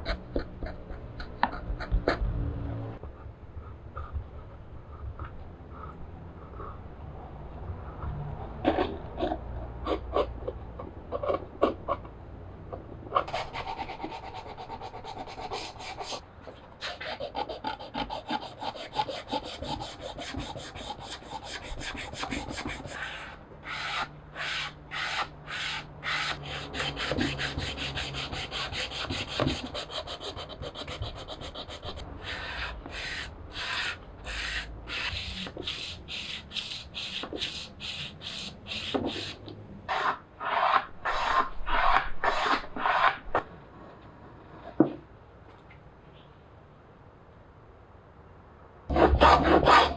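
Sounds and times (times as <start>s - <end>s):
scraping strokes on wood: 13.1s - 43.4s, 48.9s - 49.9s.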